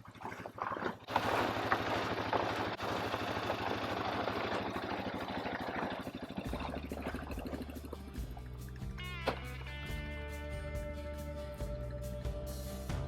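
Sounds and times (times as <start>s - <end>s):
vehicle engine running: 1.1s - 12.4s
background music: 6.5s - 13.0s.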